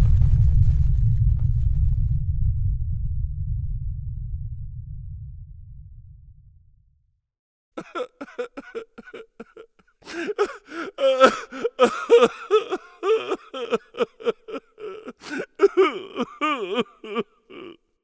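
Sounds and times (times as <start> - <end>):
person groaning and gasping: 7.8 - 17.8.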